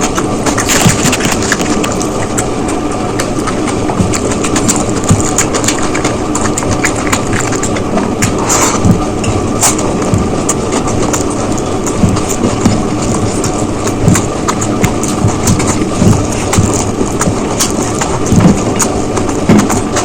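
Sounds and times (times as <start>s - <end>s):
close chewing with mouth clicks: 0.0s - 20.0s
faint steady hum: 0.0s - 20.0s.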